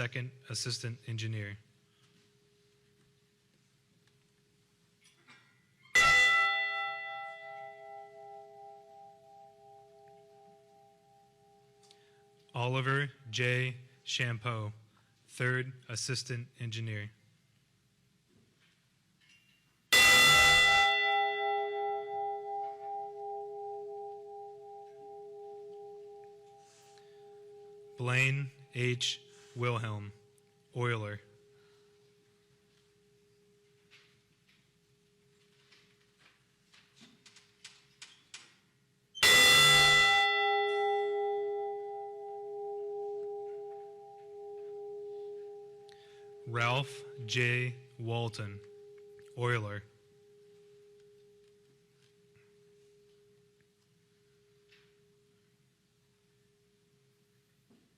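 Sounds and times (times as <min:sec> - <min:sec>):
bell strike and ring: 0:06.0 - 0:11.6, 0:19.9 - 0:28.8, 0:39.2 - 0:49.4.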